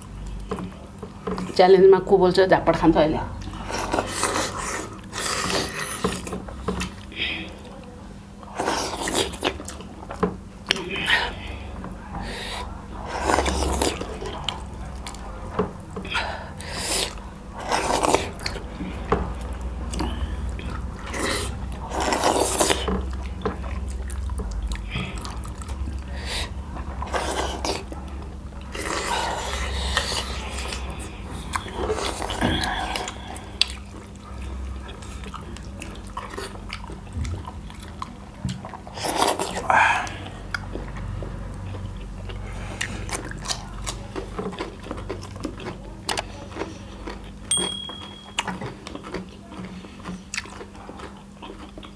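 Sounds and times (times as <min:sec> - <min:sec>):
wet chewing and smacking: 0:03.4 - 0:11.6, 0:12.6 - 0:51.9
plate clinking: 0:47.5 - 0:48.5.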